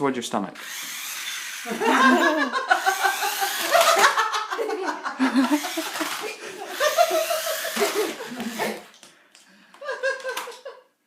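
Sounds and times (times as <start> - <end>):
young child laughing: 1.8 - 9.1.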